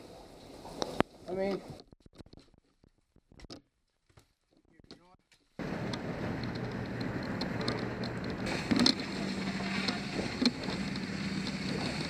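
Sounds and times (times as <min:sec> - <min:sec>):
engine clatter: 0:05.6 - 0:12.0
vehicle engine running: 0:05.6 - 0:12.0.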